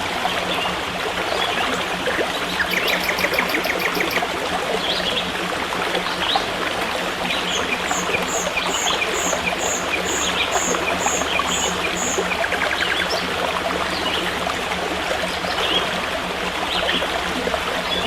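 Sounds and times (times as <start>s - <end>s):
stream water flowing: 0.0s - 18.0s
bird trilling: 2.3s - 4.3s, 7.4s - 13.3s.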